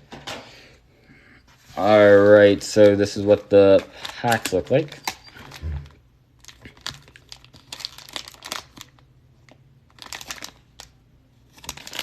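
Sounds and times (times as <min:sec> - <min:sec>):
cellophane crinkling: 0:01.6 - 0:12.0.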